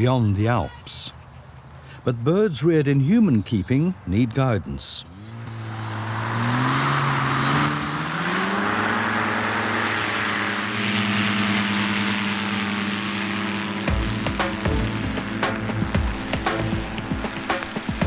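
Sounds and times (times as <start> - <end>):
propeller engine revving: 5.0 - 18.0.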